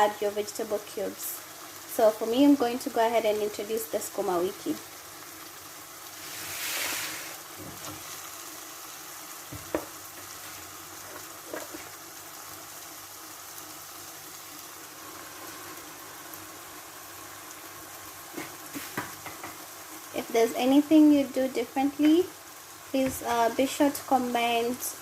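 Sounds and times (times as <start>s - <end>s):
vegetables sizzling in a pan: 0.0s - 25.0s.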